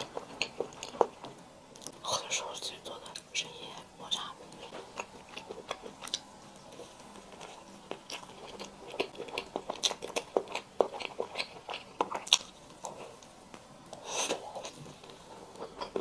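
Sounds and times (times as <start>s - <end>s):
crunchy chewing: 0.0s - 2.0s, 4.2s - 13.3s.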